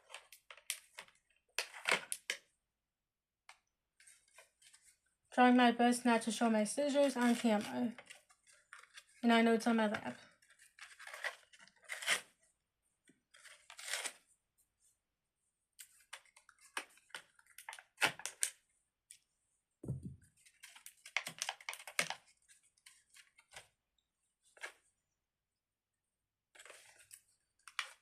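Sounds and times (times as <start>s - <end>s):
packaging crinkling and tearing: 10.5s - 12.3s, 13.4s - 14.2s, 16.0s - 18.6s, 20.5s - 22.3s
low thump: 19.8s - 20.2s.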